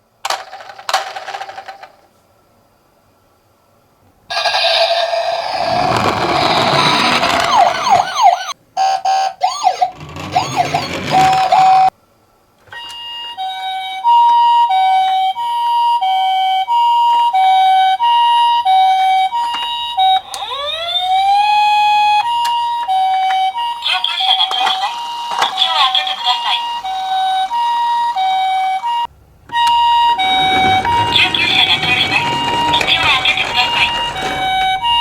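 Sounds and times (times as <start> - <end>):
toy two-tone siren: 4.3 - 11.9, 12.8 - 30.8.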